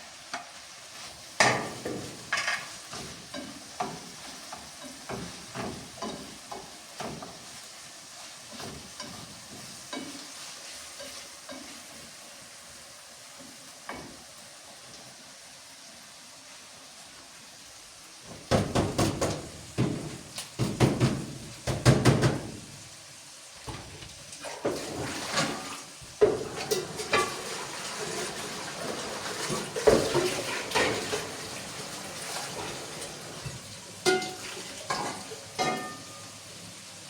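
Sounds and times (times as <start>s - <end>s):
pots and dishes clattering: 1.4s - 7.7s, 8.4s - 12.0s, 18.3s - 22.7s, 23.7s - 36.4s.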